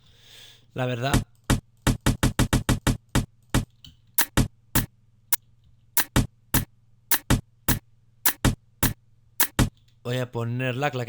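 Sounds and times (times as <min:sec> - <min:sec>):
faint steady hum: 0:00.0 - 0:11.0
drum machine groove: 0:01.1 - 0:04.9, 0:06.0 - 0:09.8.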